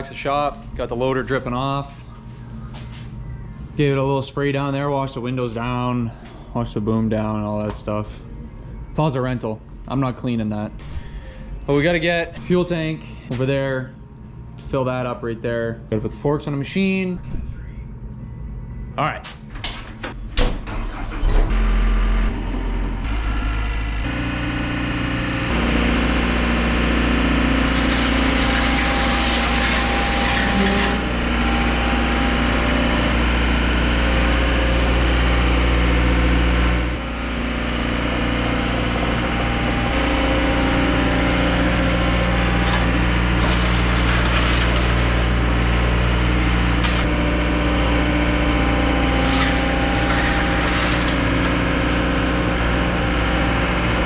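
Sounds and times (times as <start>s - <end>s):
diesel engine running: 20.6s - 54.0s.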